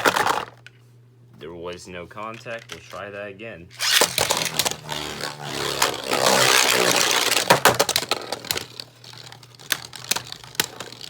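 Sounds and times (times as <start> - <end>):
spinning tops rattling scrape: 3.7 - 11.0.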